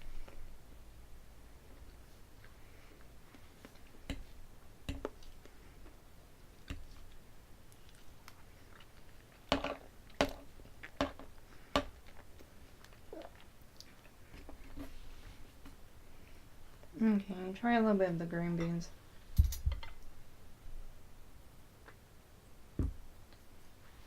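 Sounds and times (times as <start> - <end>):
person chewing: 1.8 - 14.9.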